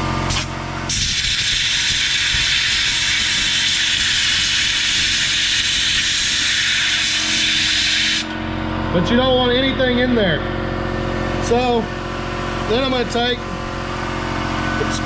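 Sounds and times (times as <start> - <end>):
air compressor humming: 0.0 - 15.0
air blow gun hissing: 0.3 - 8.3.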